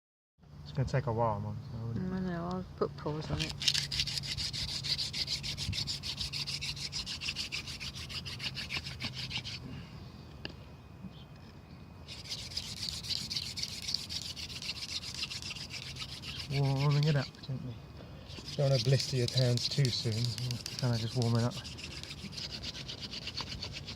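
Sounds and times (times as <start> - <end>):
wooden spindle rasping on wood: 3.6 - 9.6, 12.1 - 17.4, 18.3 - 23.9.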